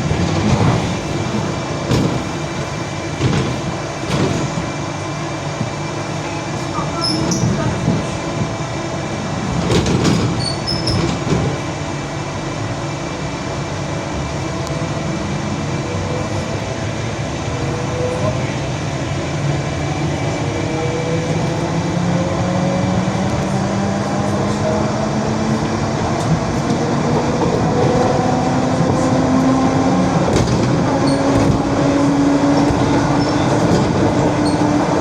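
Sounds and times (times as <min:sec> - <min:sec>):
loud knocks of train wheels: 0:00.0 - 0:04.8, 0:09.5 - 0:11.8, 0:26.2 - 0:35.0
train wheels rumbling: 0:00.0 - 0:35.0.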